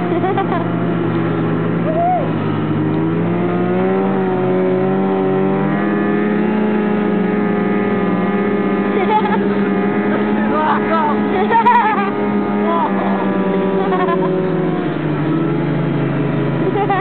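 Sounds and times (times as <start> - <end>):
snowmobile engine running: 0.0 - 17.0.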